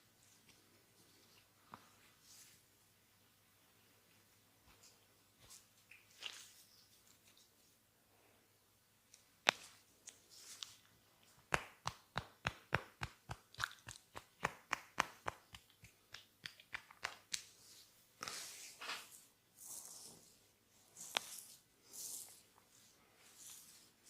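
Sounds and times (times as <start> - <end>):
hands rubbing skin: 9.4 - 24.0
hands snapping on skin: 11.5 - 17.5.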